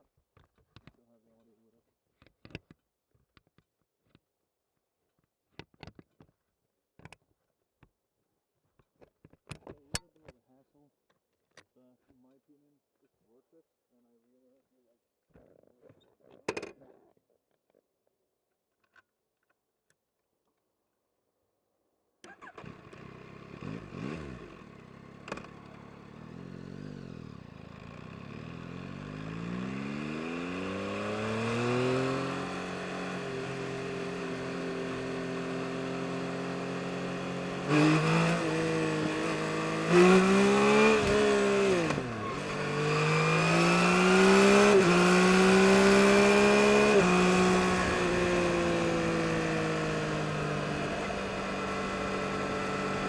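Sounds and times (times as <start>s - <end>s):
motorcycle engine accelerating: 22.3s - 53.0s.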